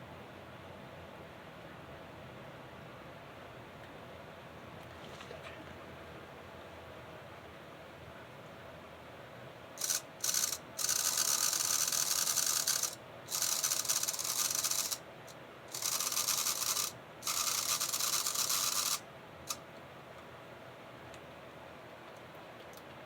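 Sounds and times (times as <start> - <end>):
model train motor squealing: 9.8 - 15.0, 15.7 - 19.6.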